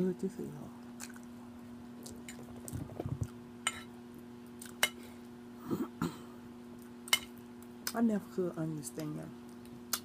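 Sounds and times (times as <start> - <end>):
wet chewing: 1.0 - 1.3.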